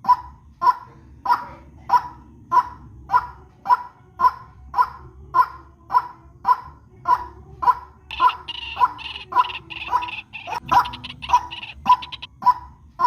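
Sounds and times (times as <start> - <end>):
bird harsh short calls: 8.1 - 12.3.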